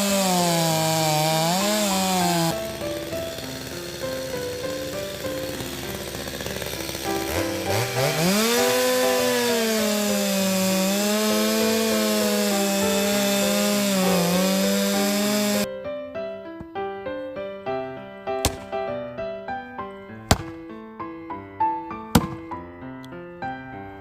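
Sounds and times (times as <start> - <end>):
chainsaw cutting wood: 0.0 - 15.7, 18.4 - 18.8, 20.3 - 20.6, 22.2 - 22.5.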